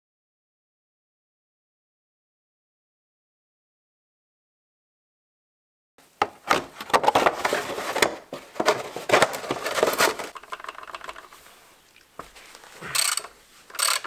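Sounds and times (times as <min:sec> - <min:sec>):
clicks and knocks on metal parts: 0:12.9 - 0:14.0.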